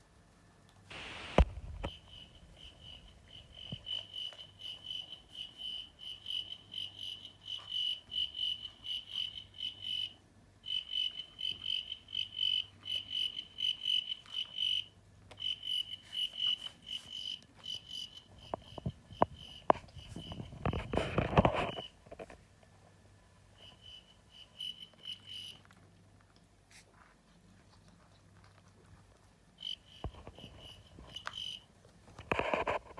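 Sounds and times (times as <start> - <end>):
cricket chirping: 1.7 - 22.0, 23.6 - 25.8, 29.6 - 31.7.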